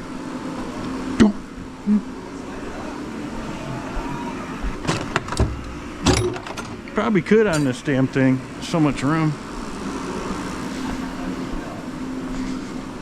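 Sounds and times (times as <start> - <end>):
steady hum: 0.0 - 6.1, 7.0 - 13.0.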